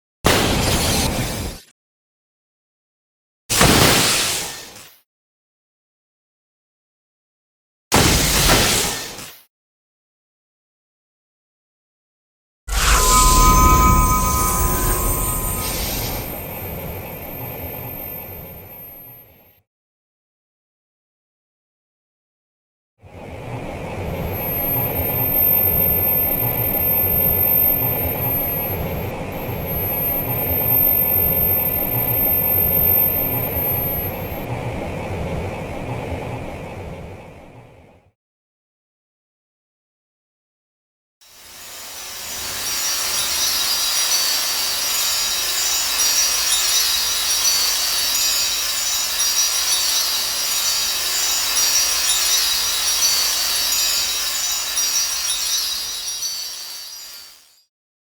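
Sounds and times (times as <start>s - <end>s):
high steady whine: 12.7s - 19.3s, 24.2s - 34.5s.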